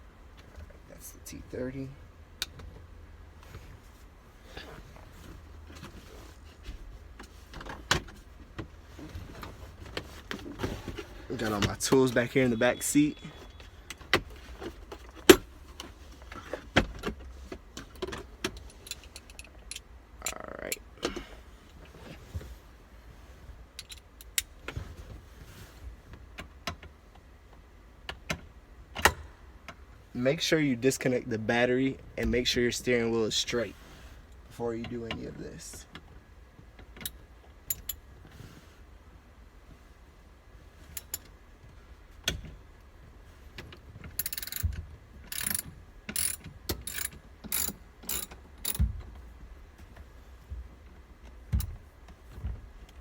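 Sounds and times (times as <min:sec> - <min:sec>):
hand ratchet clicking: 0:44.2 - 0:44.7, 0:45.3 - 0:48.8.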